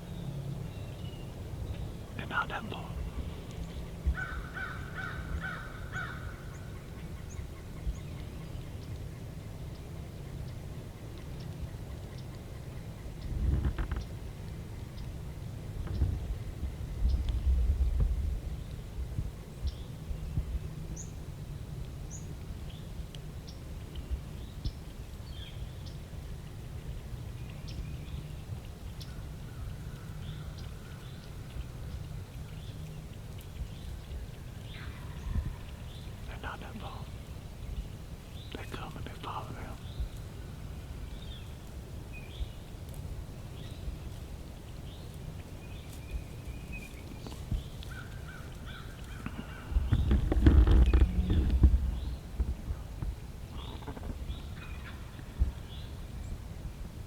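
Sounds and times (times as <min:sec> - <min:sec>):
low background rumble: 0:00.0 - 0:57.0
songbirds chirping: 0:00.0 - 0:57.0
low microphone rumble: 0:00.8 - 0:04.5, 0:15.7 - 0:21.3, 0:45.6 - 0:57.0
birds chirping: 0:27.4 - 0:41.6, 0:43.5 - 0:52.4, 0:53.5 - 0:56.0.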